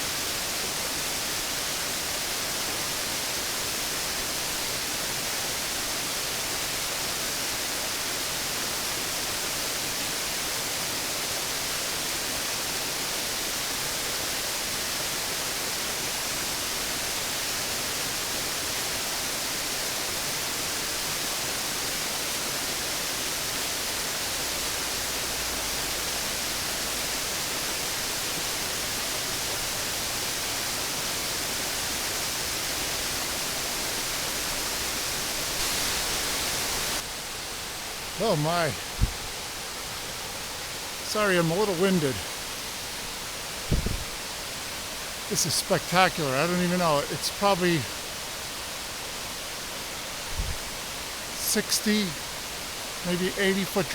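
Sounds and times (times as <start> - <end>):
waterfall rushing: 12.1 - 53.9.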